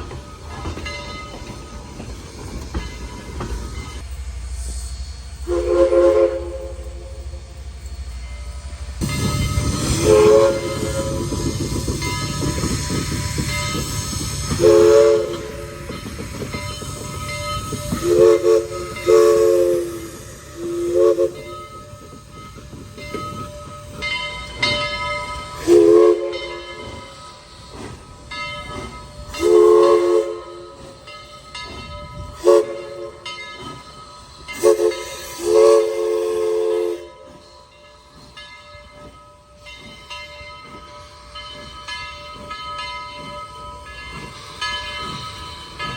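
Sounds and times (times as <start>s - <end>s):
steam whistle chord blasts: 5.4s - 7.5s, 8.5s - 11.5s, 14.4s - 15.9s, 17.6s - 22.0s, 25.4s - 27.1s, 29.3s - 31.0s, 32.3s - 33.4s, 34.5s - 37.7s.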